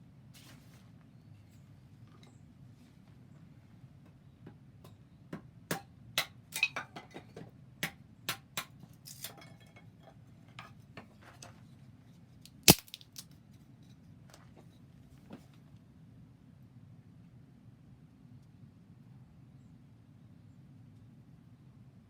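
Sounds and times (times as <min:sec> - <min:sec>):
wood stove fire crackling: 0:12.6 - 0:13.2.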